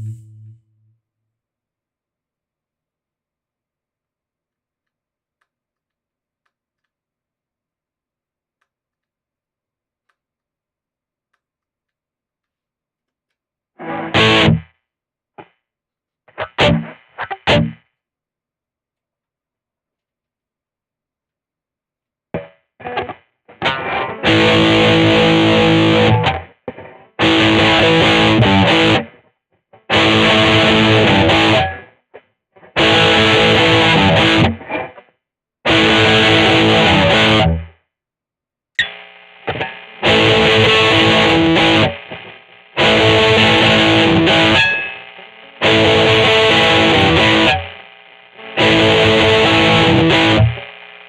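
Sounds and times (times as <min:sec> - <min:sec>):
distorted electric guitar: 0:00.0 - 0:00.9, 0:13.8 - 0:14.8, 0:16.3 - 0:17.9, 0:22.4 - 0:37.8, 0:38.8 - 0:51.0.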